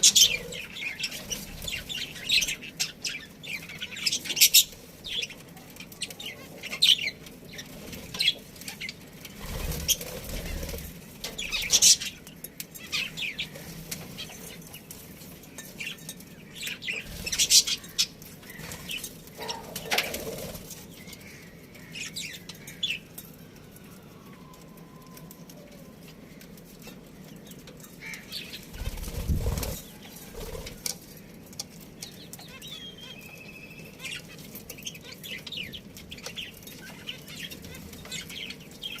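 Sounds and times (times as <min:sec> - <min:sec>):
wings fluttering in cage: 0:07.5 - 0:12.1, 0:18.5 - 0:21.0, 0:28.6 - 0:31.2.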